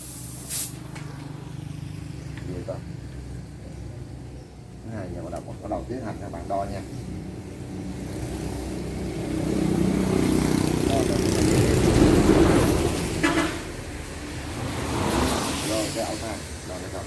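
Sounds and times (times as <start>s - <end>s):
motorbike engine passing: 7.1s - 17.0s.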